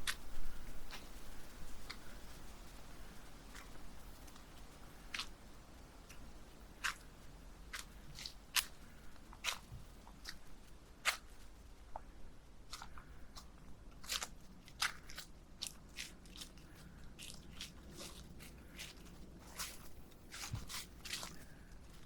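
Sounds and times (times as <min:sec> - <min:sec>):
footsteps crunching on dry leaves: 0:12.7 - 0:22.0.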